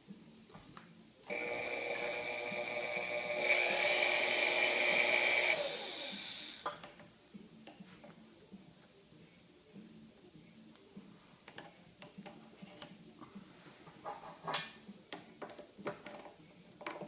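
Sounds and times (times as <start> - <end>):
drill press motor whine: 1.3 - 6.7.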